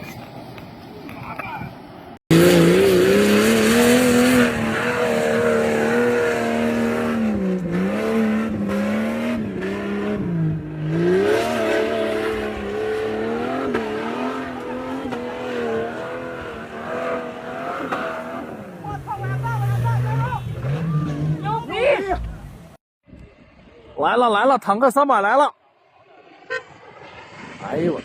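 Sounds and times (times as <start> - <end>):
engine revving under load: 2.3 - 22.4.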